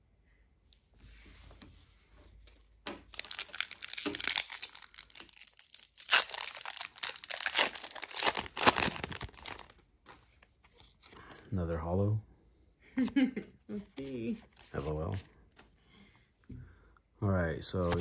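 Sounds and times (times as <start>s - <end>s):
foil wrapper crinkling and tearing: 3.1s - 9.9s.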